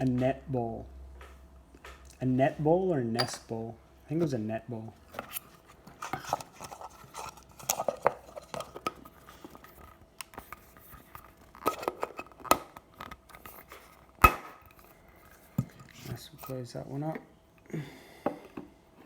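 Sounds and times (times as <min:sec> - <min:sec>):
card packs rustling: 0:05.0 - 0:14.2.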